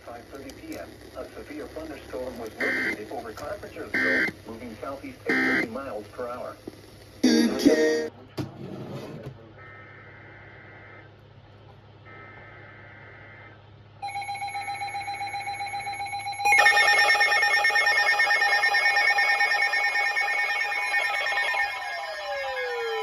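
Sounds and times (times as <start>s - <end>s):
buzzy data bursts: 0.1s - 6.0s
pulsing electronic alarm tone: 14.0s - 23.0s.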